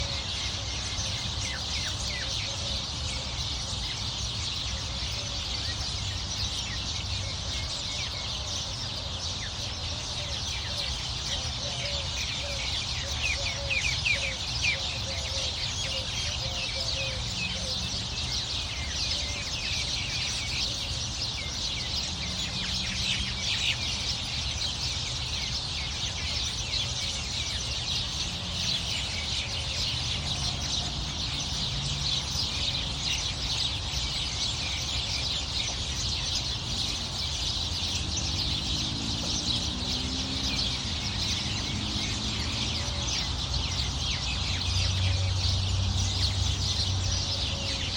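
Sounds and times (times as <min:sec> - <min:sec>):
songbirds chirping and singing: 0:00.0 - 0:47.9.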